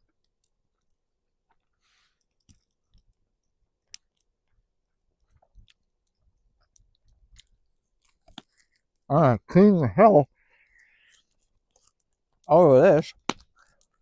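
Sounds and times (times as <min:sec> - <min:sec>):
faint clicks and soft knocks: 0:00.0 - 0:09.1.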